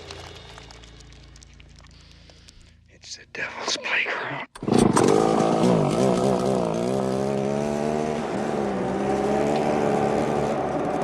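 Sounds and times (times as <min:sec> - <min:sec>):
chainsaw engine running: 0:04.6 - 0:11.0.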